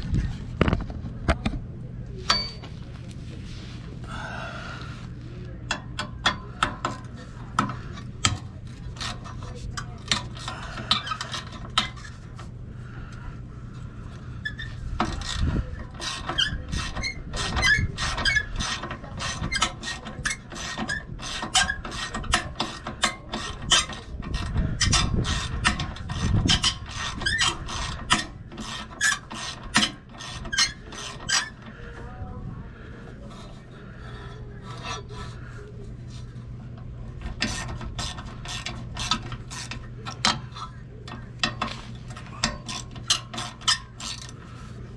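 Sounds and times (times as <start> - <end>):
metal scraping: 5.8 - 12.6, 13.6 - 44.9.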